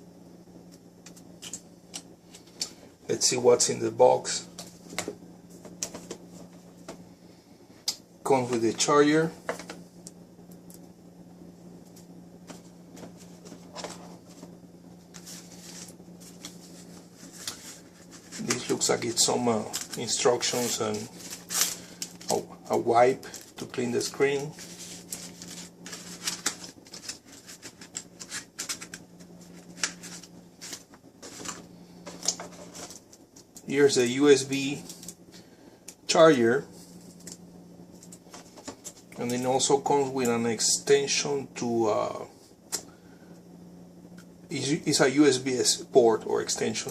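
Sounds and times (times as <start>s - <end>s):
low hum: 0.0s - 41.6s
packaging rustling: 15.1s - 33.6s.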